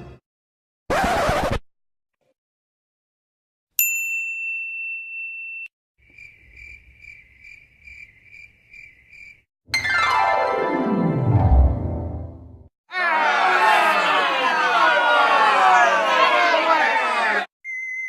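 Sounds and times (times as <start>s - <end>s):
cricket chirping: 6.0s - 9.5s.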